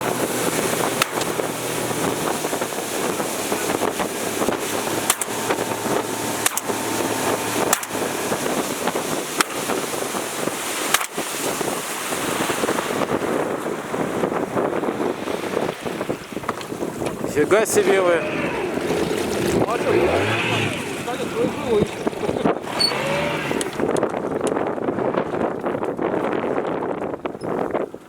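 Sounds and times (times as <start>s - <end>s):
motorboat engine running: 0.0s - 28.0s
wind noise on microphone: 0.0s - 28.0s
sharp knocks: 0.8s - 1.6s, 3.8s - 9.8s.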